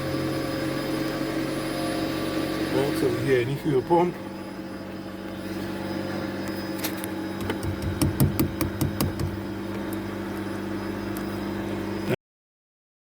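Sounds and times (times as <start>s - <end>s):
fuel pump humming: 0.0s - 12.2s.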